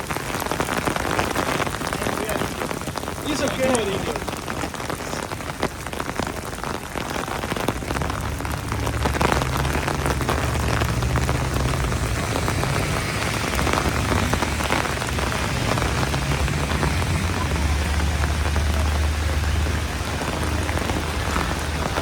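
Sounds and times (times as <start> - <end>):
heavy rain falling: 0.0 - 22.0.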